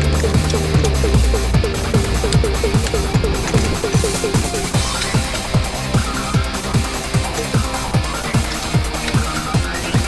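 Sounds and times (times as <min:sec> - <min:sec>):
electronic music with kick drum: 0:00.0 - 0:10.0.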